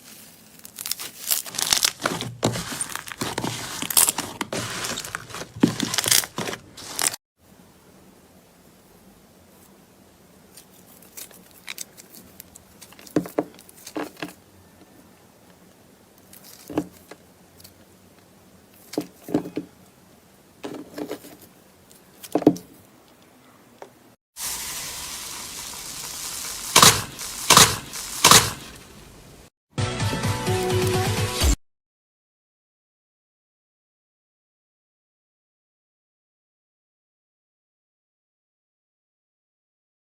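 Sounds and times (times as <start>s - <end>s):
sharp crunches: 0.0s - 7.2s, 26.2s - 29.4s
steady hiss: 24.4s - 29.5s
slime popping and crackling: 25.7s - 28.8s.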